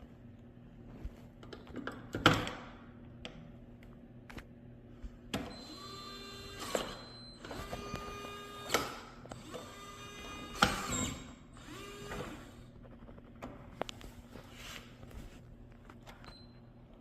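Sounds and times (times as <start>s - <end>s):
lock motor whirring: 5.3s - 12.7s.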